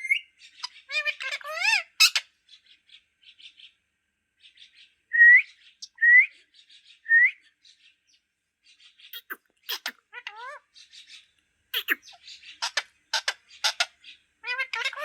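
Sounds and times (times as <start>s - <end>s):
parrot chirps and clicks: 9.2s - 10.4s, 11.8s - 13.4s.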